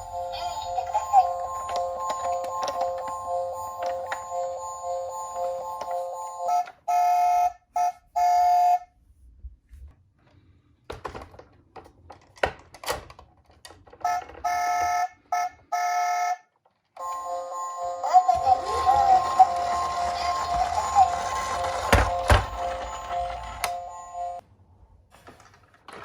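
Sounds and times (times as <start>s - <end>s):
toy cars rolling and bumping: 0.0s - 6.8s, 10.9s - 15.4s, 18.1s - 24.4s, 25.2s - 26.0s
electronic toy siren tones: 1.0s - 8.9s, 17.0s - 24.4s.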